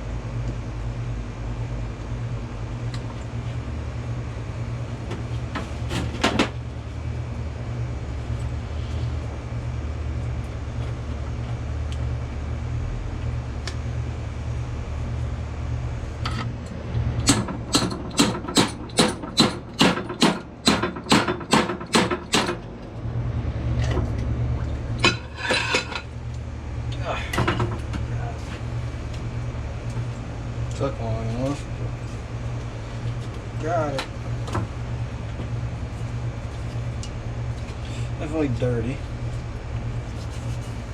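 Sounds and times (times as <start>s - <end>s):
steady low hum: 0.0s - 40.9s
hammer knocking on metal: 17.3s - 22.6s.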